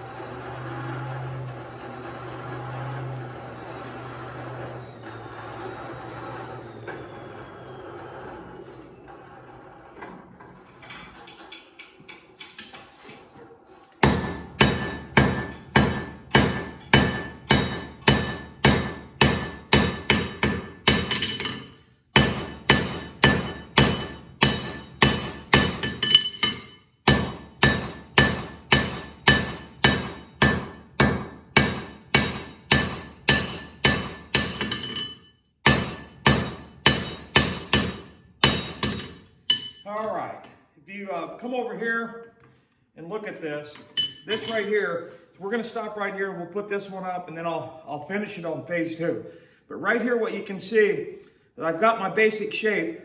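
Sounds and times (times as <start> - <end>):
hammer striking steel on anvil: 14.0 - 40.1, 43.8 - 44.8.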